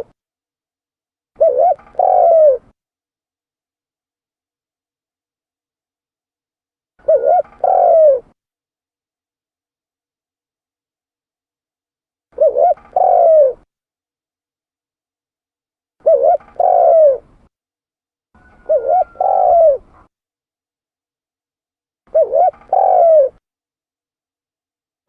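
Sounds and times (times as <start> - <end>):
dove cooing: 1.4 - 2.7, 7.0 - 8.4, 12.4 - 13.7, 16.0 - 17.4, 18.4 - 20.1, 22.1 - 23.4.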